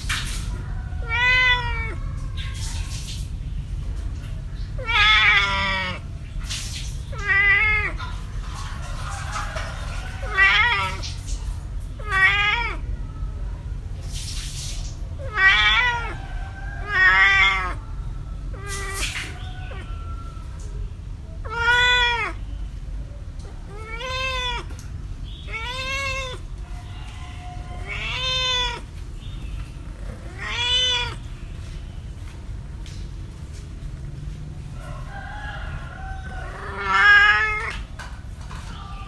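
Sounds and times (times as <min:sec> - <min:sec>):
cat meowing: 0:01.0 - 0:02.6, 0:04.8 - 0:06.0, 0:07.1 - 0:08.1, 0:08.8 - 0:11.2, 0:11.9 - 0:13.1, 0:15.2 - 0:17.8, 0:18.5 - 0:20.7, 0:21.4 - 0:22.6, 0:23.4 - 0:29.0, 0:29.8 - 0:31.4, 0:35.9 - 0:38.0
steady low rumble: 0:22.4 - 0:38.5.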